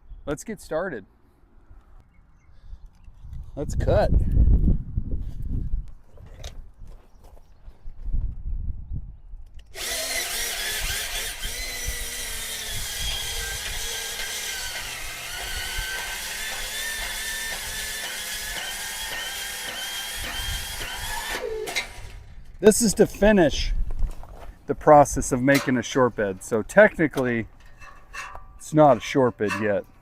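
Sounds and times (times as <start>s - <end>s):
power tool cutting through steel: 9.7s - 22.3s.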